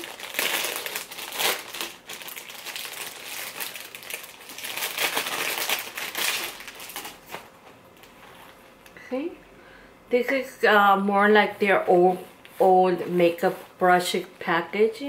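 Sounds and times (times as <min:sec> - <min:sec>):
packaging crinkling and rustling: 0:00.0 - 0:08.6.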